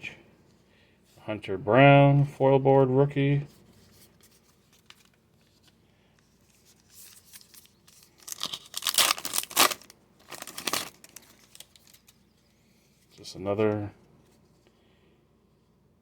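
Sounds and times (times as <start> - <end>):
foil wrapper crinkling and tearing: 6.7 - 12.2.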